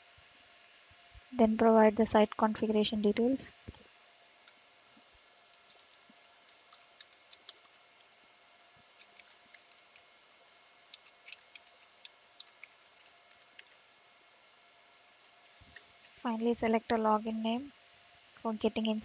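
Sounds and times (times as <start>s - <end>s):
computer keyboard typing: 5.5s - 7.8s, 9.0s - 10.1s, 10.9s - 13.8s.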